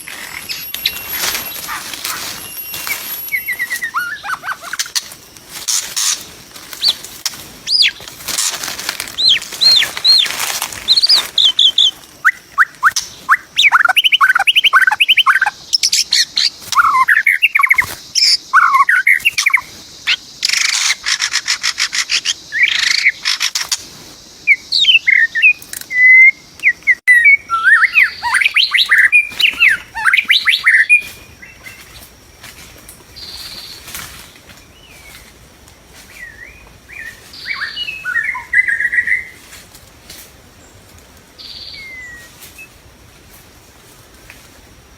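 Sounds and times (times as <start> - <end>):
bird whistling song: 0.0 - 5.1, 7.7 - 8.0, 9.1 - 23.7, 24.4 - 31.9, 36.1 - 39.4, 41.4 - 42.8
rustling noise: 0.0 - 13.3, 28.4 - 37.5, 39.3 - 41.4.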